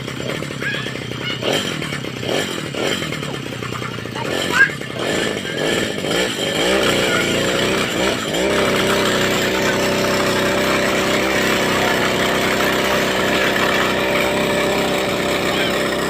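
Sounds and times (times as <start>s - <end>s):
small engine revving: 0.0s - 16.0s.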